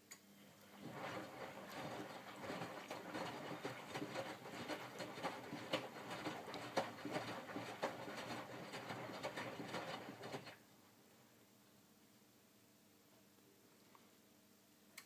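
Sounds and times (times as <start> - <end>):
water sloshing and splashing: 0.6 - 10.6
washing machine drum tumbling: 0.8 - 10.6.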